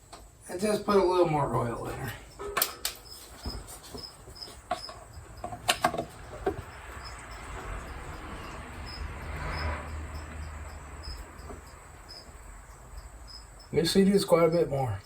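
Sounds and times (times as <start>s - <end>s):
crickets chirping: 0.0s - 15.0s
clicks and knocks of handling: 4.7s - 6.6s.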